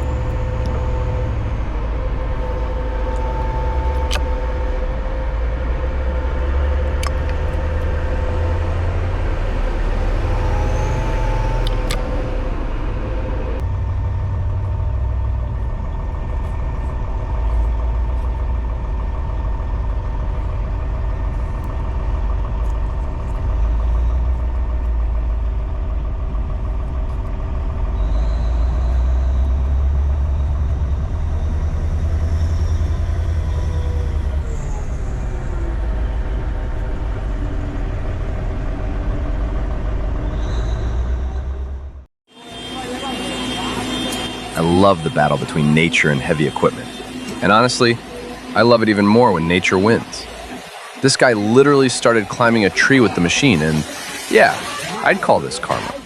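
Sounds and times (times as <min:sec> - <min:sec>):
heavy machinery engine rumbling: 0:00.0 - 0:56.0
steady whine: 0:00.0 - 0:56.0
sharp clicks: 0:02.4 - 0:04.5, 0:06.9 - 0:08.2, 0:10.4 - 0:12.3.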